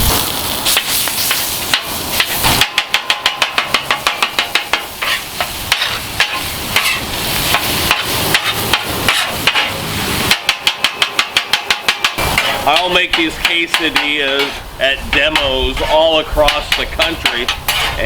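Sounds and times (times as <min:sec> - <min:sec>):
sausage sizzling on a griddle: 0:00.0 - 0:18.0
metal spatula chopping clacks: 0:00.8 - 0:18.0.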